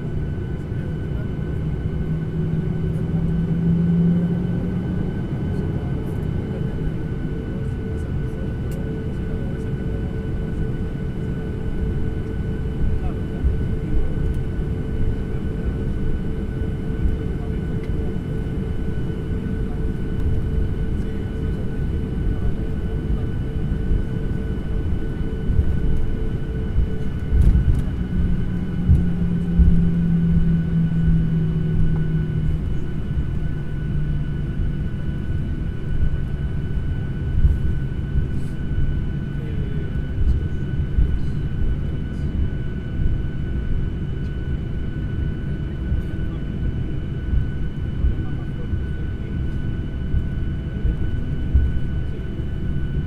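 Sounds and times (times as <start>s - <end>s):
aircraft engine and airflow rumble: 0.0s - 53.0s
deeper hum: 12.6s - 43.2s.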